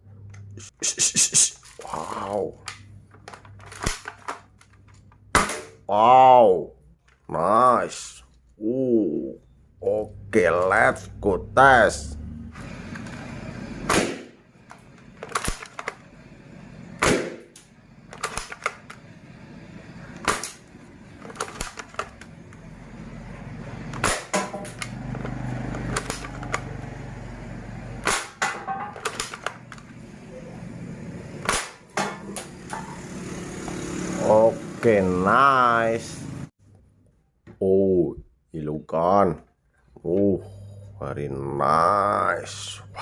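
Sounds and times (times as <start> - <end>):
toy blaster shots: 13.8 - 14.4, 17.0 - 17.6, 24.0 - 24.9.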